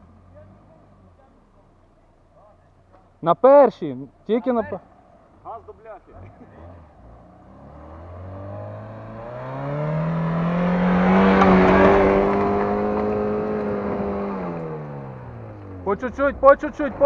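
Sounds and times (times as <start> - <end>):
car engine revving: 4.8 - 17.0.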